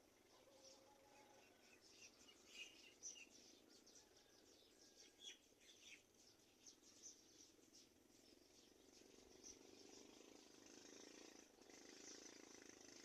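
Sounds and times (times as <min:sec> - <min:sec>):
faint bird chirps: 0:00.0 - 0:13.0
low steady hum: 0:00.0 - 0:13.0.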